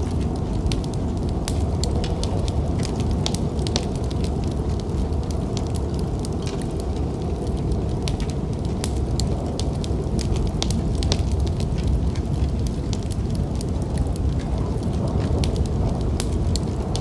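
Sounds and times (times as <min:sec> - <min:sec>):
snowstorm wind rumble: 0:00.0 - 0:17.0
wood fire crackling and popping: 0:00.0 - 0:17.0.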